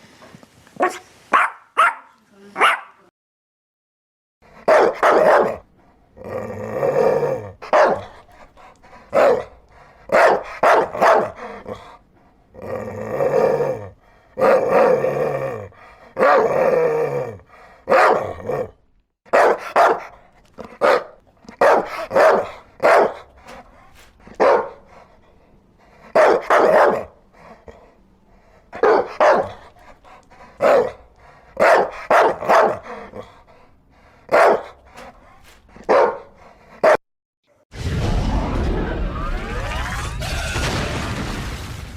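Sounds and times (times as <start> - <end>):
dog barking: 0.8 - 3.1, 4.6 - 5.7, 7.4 - 8.4, 9.1 - 11.8, 16.2 - 16.6, 17.8 - 18.7, 19.3 - 23.6, 24.2 - 25.0, 26.0 - 27.2, 28.7 - 30.0, 30.6 - 33.4, 34.2 - 37.0.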